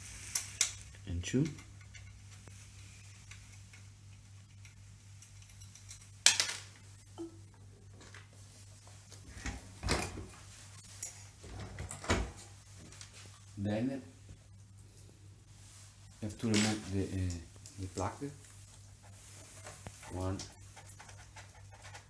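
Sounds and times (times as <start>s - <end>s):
low steady hum: 0.0s - 22.0s
small metal parts clicking: 4.6s - 6.7s.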